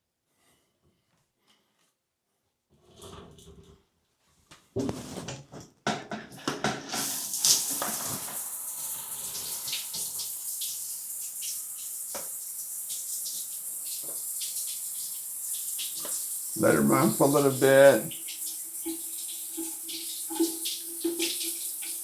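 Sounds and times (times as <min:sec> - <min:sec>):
shower water running: 0:06.6 - 0:22.0.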